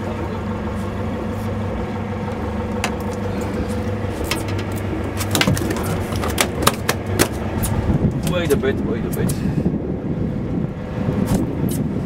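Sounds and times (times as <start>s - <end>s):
boat engine humming: 0.0s - 12.0s
sharp clicks and knocks: 4.2s - 8.4s.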